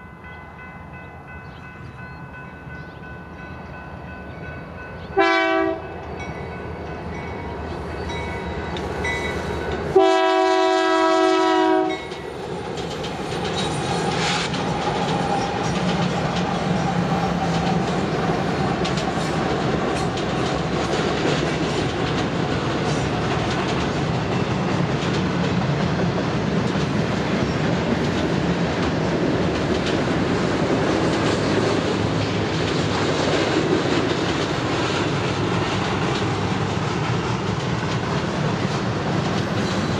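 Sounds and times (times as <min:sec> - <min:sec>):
train wheels rolling on rails: 0:00.0 - 0:39.9
train horn blast: 0:05.1 - 0:06.0, 0:09.9 - 0:12.1.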